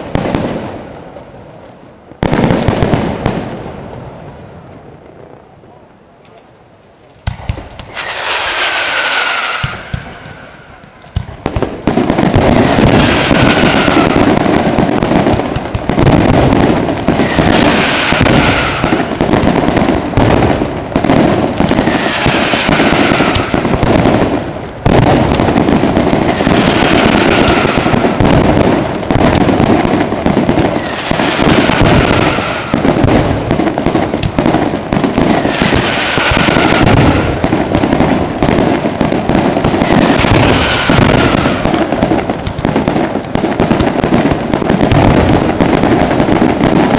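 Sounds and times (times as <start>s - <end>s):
fireworks bangs and crackling: 0.0s - 46.9s
falling firework whistle: 7.4s - 11.1s, 12.5s - 14.4s, 17.2s - 19.2s, 21.8s - 23.8s, 26.3s - 28.3s, 30.8s - 33.0s, 35.3s - 37.6s, 39.8s - 42.0s.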